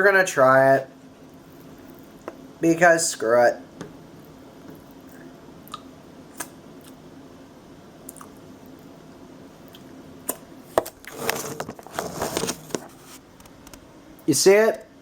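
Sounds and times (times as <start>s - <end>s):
squishy crunchy food sounds: 1.2s - 2.5s, 8.0s - 13.8s.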